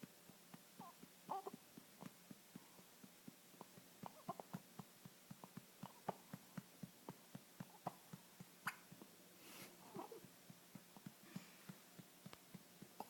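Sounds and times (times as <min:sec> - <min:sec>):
baby hiccups with squeaks: 0:08.6 - 0:08.9.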